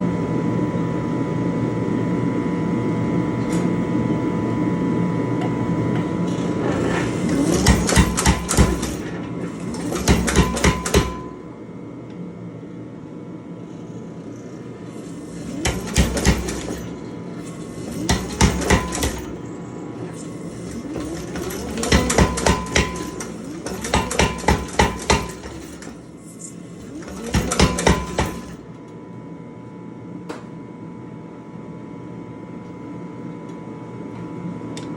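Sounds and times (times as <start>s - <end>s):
power hammer striking hot steel: 6.7s - 11.5s, 15.2s - 28.6s.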